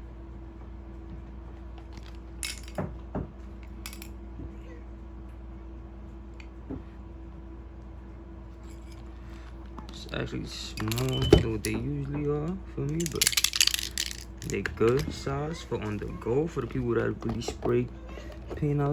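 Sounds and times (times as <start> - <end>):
steady low hum: 0.0 - 18.9
metal spray cans clinking: 10.8 - 11.8, 13.0 - 15.3.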